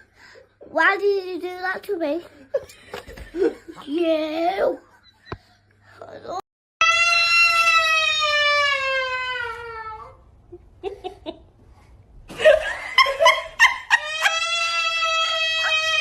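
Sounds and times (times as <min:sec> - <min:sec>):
baby squealing: 0:13.9 - 0:16.0.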